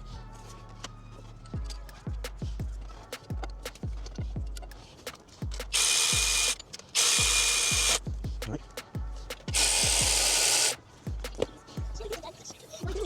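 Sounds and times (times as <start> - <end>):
beat with deep bass: 1.6 - 13.0
cordless power tool driving bolts: 5.7 - 8.0, 9.6 - 10.7.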